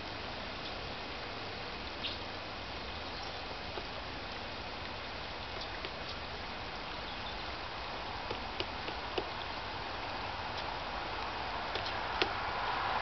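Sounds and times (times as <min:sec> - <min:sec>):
steady background hiss: 0:00.0 - 0:13.0
woodpecker knocking on wood: 0:05.5 - 0:06.2, 0:08.2 - 0:09.5, 0:11.7 - 0:12.5.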